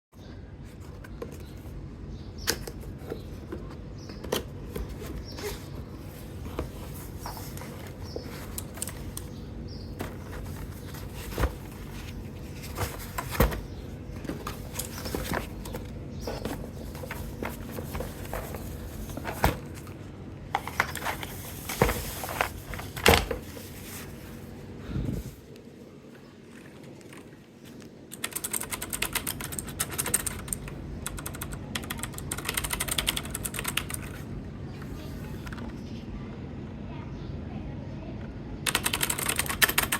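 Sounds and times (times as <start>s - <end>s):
faint steady hum: 0.2s - 39.9s
keyboard and packaging clicks and knocks: 9.9s - 19.9s, 20.6s - 23.6s.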